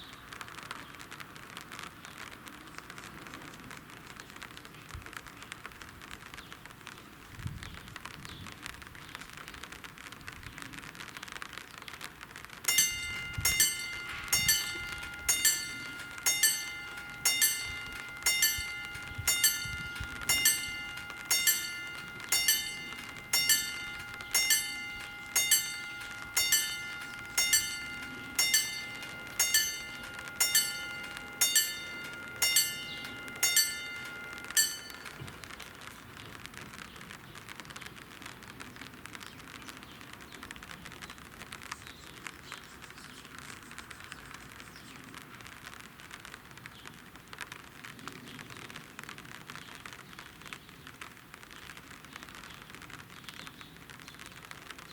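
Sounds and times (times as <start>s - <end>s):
steady hiss: 12.7s - 35.6s
crossing warning bell: 12.7s - 36.5s.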